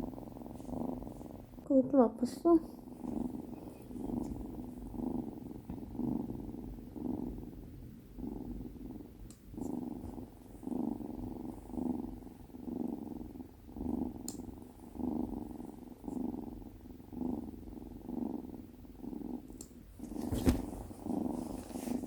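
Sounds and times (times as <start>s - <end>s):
kitten purring: 0.0s - 22.0s
faint clicks: 14.2s - 14.5s, 19.5s - 19.8s.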